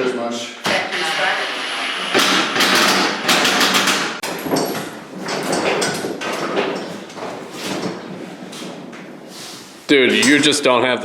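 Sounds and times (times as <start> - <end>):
loud metal bangs: 2.1 - 6.3.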